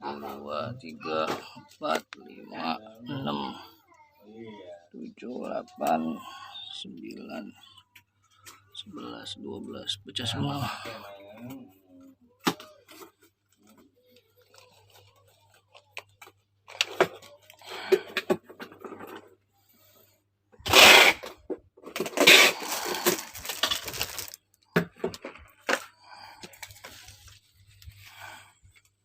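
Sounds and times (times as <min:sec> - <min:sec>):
packaging rustling and scraping: 0:20.6 - 0:28.4.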